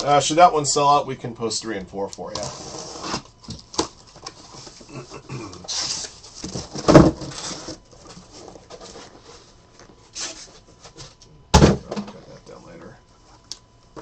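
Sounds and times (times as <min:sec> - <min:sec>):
cardboard boxes rustling: 0:05.7 - 0:11.2.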